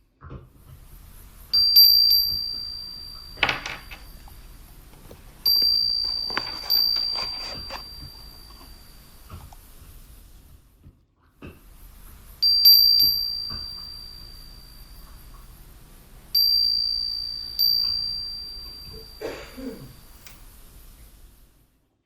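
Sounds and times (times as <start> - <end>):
soft rustle: 0.6 - 10.8
high-pitched chime ringing: 1.2 - 10.0, 12.2 - 21.0.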